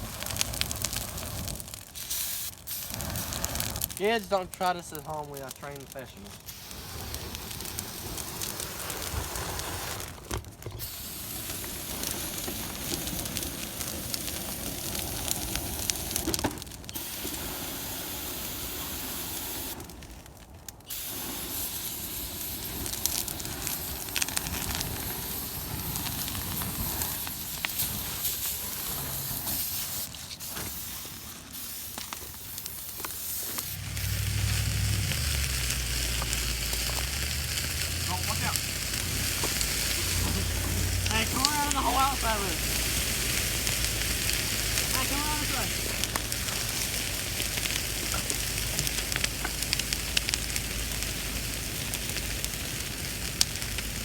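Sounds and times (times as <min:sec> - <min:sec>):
bonfire hissing and crackling: 0:00.0 - 0:54.0
low rumble: 0:33.6 - 0:51.4.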